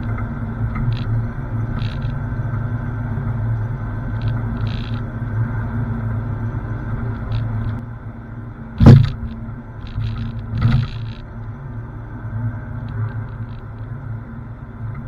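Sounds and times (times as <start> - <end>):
light clicks and rattles: 0.0 - 2.6, 8.8 - 11.4, 12.8 - 14.0
loud metal clank: 8.8 - 9.3.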